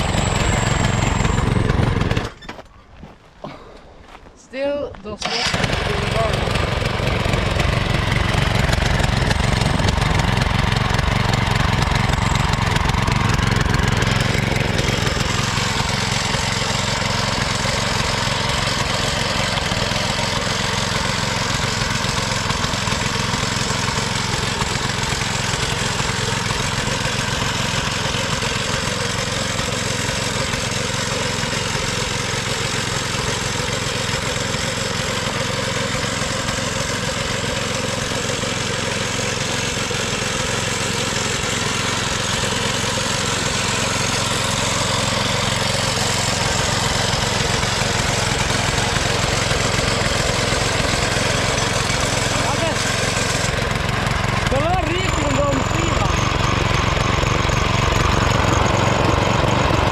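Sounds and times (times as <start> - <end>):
small petrol engine running: 0.0 - 2.6, 5.0 - 59.9.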